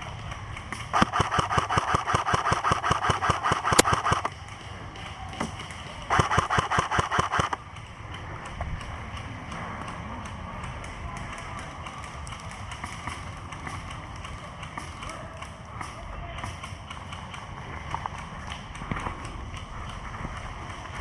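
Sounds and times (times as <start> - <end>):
steady whine: 0.9 - 4.3, 6.1 - 7.6
airsoft rifle full-auto bursts: 0.9 - 4.4, 6.1 - 7.7.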